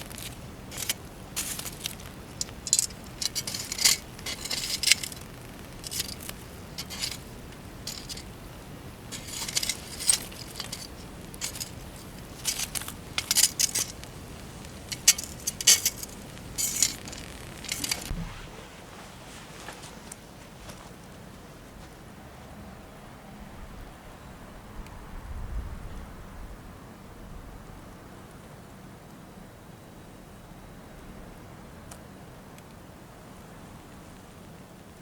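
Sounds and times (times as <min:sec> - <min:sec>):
small hard objects clinking: 0:00.0 - 0:18.1.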